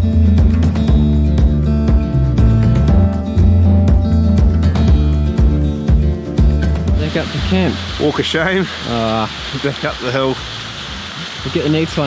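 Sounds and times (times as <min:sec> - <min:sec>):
strummed acoustic guitar music: 0:00.0 - 0:09.0.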